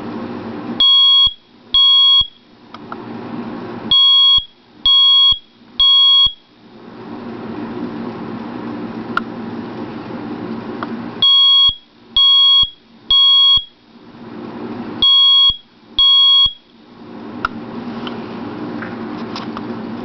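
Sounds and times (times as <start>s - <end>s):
smoke alarm beeps: 0.8s - 2.5s, 3.9s - 6.5s, 11.2s - 13.8s, 15.0s - 16.7s.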